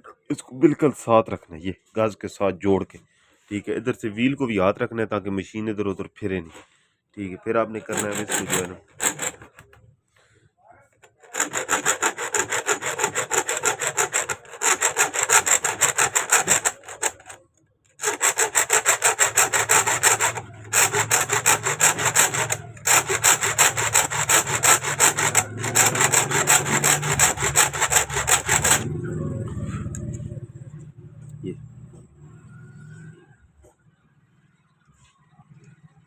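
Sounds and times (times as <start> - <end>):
hacksaw sawing through metal: 7.7 - 9.8, 11.0 - 17.4, 18.0 - 29.2.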